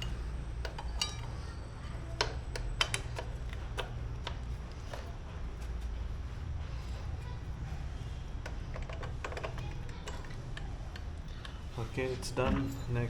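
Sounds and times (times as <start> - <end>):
metallic clicks and taps: 2.2 - 5.1.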